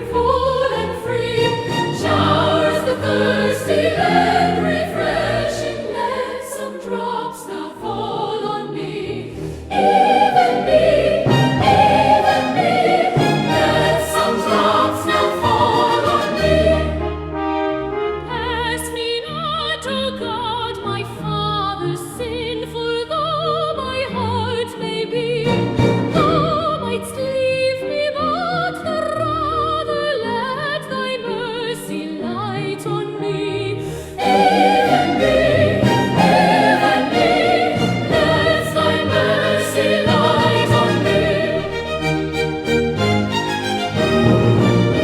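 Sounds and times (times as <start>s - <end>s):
hymn singing with vibrato: 0.0s - 17.0s, 33.8s - 41.9s.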